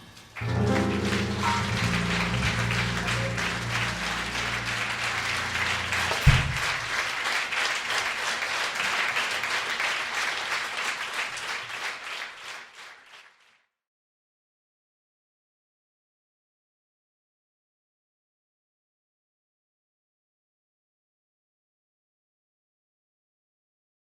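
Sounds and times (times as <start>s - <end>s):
low music notes ringing: 0.4s - 6.8s
audience applauding: 0.4s - 13.6s
thump: 6.1s - 6.9s.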